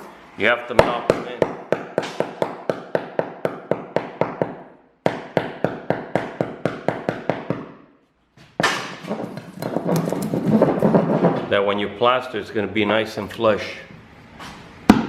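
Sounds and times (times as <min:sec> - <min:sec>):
hammer tapping: 0:00.8 - 0:07.8.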